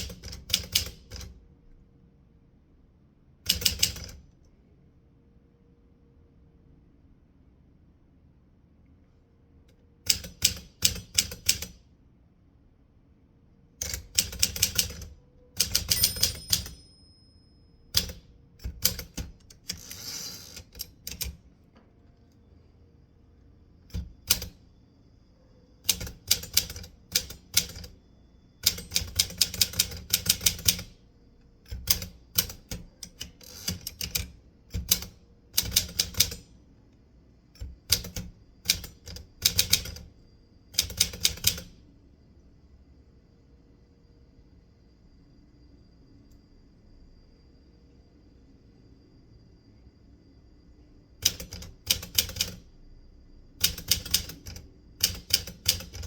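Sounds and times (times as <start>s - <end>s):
typewriter keys striking: 0.0s - 1.3s, 10.1s - 11.8s, 13.8s - 16.9s, 18.0s - 21.4s, 23.9s - 24.6s, 25.9s - 28.0s, 28.6s - 31.0s, 31.7s - 36.4s, 37.6s - 40.0s, 40.8s - 41.7s, 51.2s - 52.6s, 53.6s - 56.0s.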